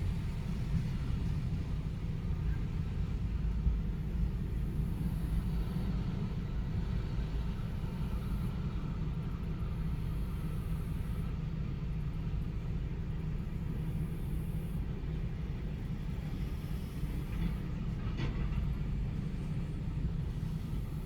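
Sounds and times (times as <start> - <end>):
heavy diesel machinery rumbling: 0.0 - 21.0.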